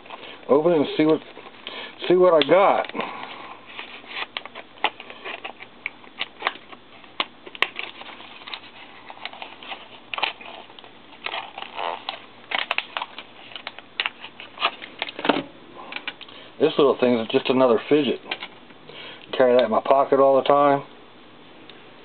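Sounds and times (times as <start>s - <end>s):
crinkly packaging rustles: 0.0s - 15.3s.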